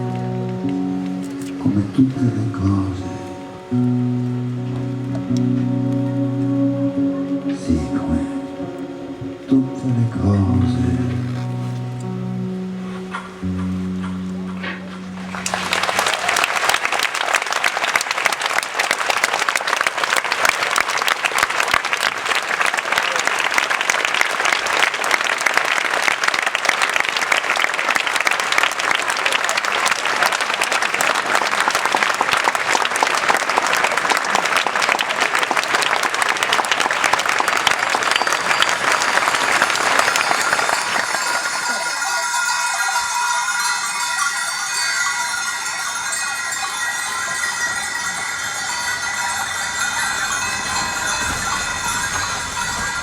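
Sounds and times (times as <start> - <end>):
audience applauding: 12.8 - 53.0
held musical note: 31.6 - 53.0.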